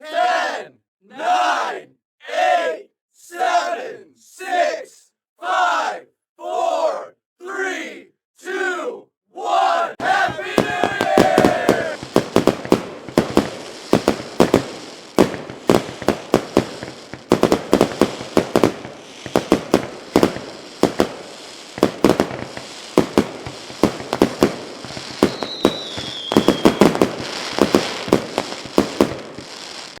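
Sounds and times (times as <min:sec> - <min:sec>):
firework whistle: 0:10.0 - 0:30.0
fireworks banging and crackling: 0:10.0 - 0:30.0.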